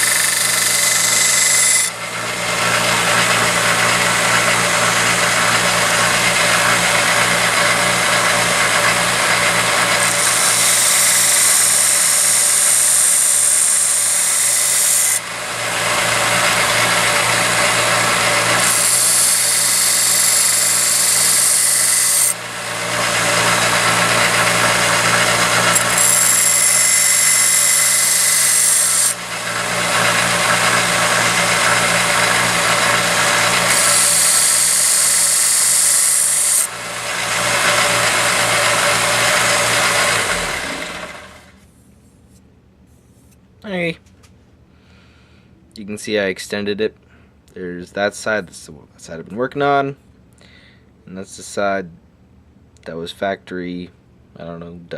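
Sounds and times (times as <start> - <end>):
belt grinder motor hum: 0.0 - 41.6.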